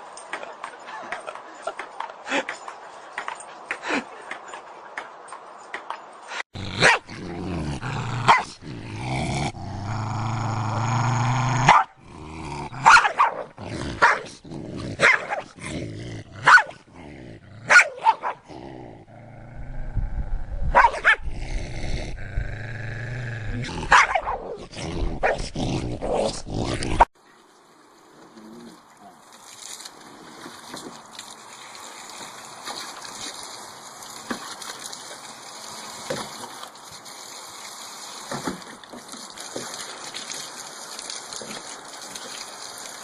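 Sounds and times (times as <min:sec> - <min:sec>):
low dog growl: 0:06.6 - 0:12.8, 0:18.4 - 0:23.9
dogs barking: 0:06.8 - 0:07.0, 0:12.8 - 0:13.4, 0:16.4 - 0:16.8, 0:17.7 - 0:18.4, 0:23.9 - 0:24.4.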